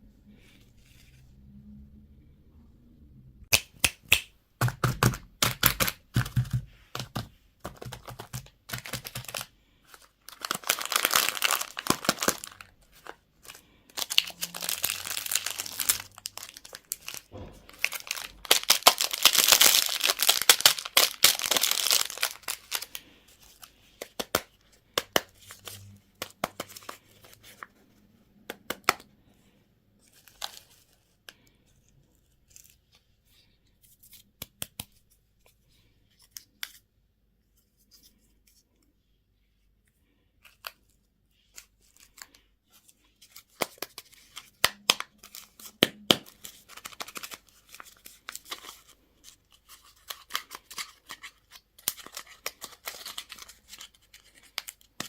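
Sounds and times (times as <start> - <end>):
packaging tearing: 7.8 - 23.0
wrapper crackling: 7.8 - 24.5, 43.3 - 49.0.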